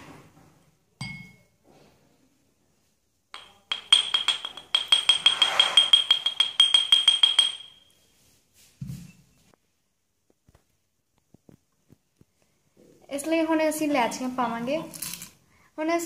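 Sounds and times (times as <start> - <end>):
pestle pounding in a mortar: 3.4 - 7.7.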